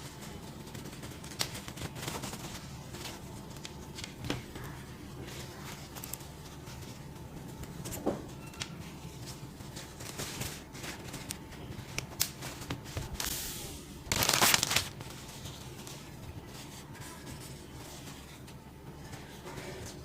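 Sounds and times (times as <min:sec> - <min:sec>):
packaging clicks and crinkles: 0:00.1 - 0:13.4, 0:14.1 - 0:16.2
packaging crinkling rustle: 0:09.0 - 0:18.6.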